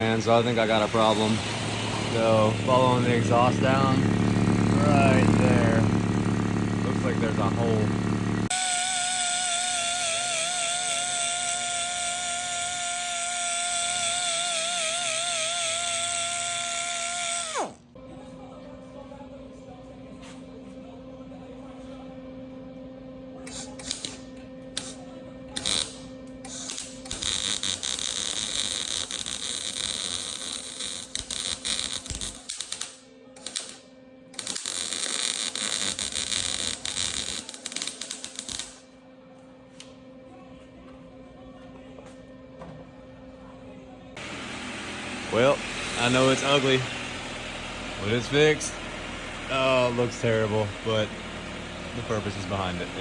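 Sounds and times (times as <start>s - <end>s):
welding arc crackling: 0.2s - 17.8s, 23.5s - 24.2s, 24.8s - 25.0s, 25.6s - 33.8s, 34.4s - 38.8s
car engine idling: 0.6s - 8.5s.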